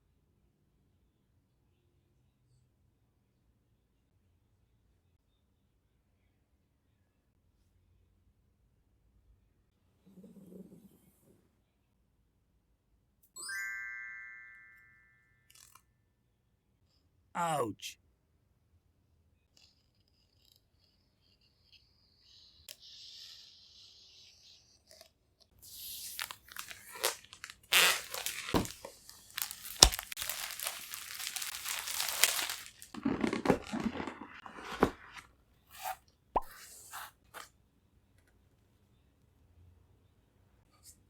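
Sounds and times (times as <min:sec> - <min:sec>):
wrapping crinkling and tearing: 0:25.6 - 0:36.0.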